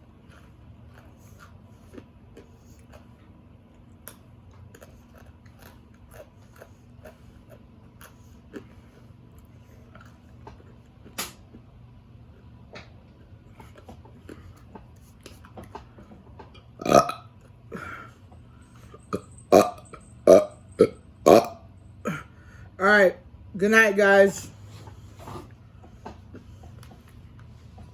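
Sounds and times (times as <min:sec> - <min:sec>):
person chewing crunchy snacks: 0:00.0 - 0:11.6, 0:16.6 - 0:18.1
low steady hum: 0:00.0 - 0:27.9.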